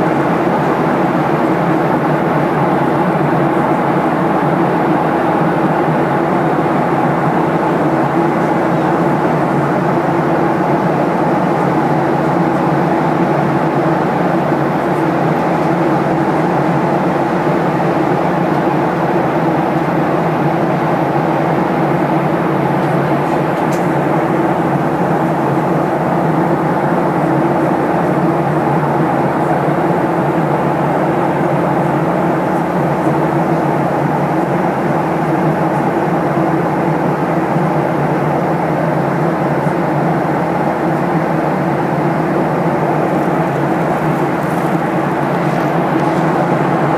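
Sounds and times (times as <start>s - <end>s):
engine and airflow rush: 0.0s - 46.9s
constant low hum: 21.4s - 46.9s.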